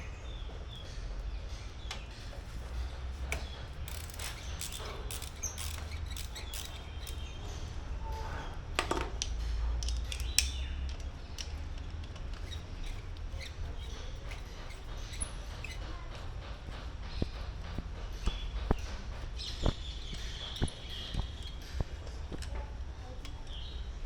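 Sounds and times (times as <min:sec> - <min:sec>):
metallic clicks of hand tools: 0:03.3 - 0:07.4, 0:09.2 - 0:12.6.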